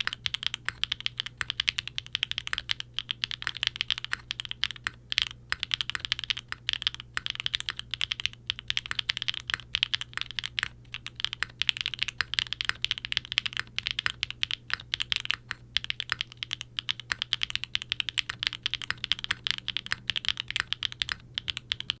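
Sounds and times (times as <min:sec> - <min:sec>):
faint steady hum: 0:00.0 - 0:22.0
fast typing on mechanical keyboard: 0:00.0 - 0:22.0.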